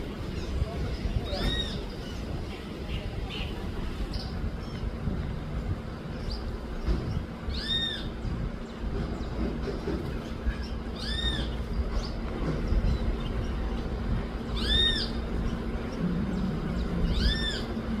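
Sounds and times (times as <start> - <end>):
bird calling: 6.9 - 8.3, 9.3 - 13.7, 14.4 - 18.0.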